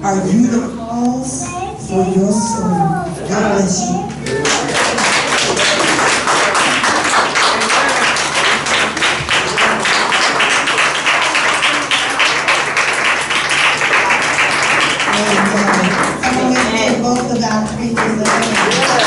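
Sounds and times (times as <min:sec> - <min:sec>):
congregation clapping in rhythm: 0:04.3 - 0:19.0.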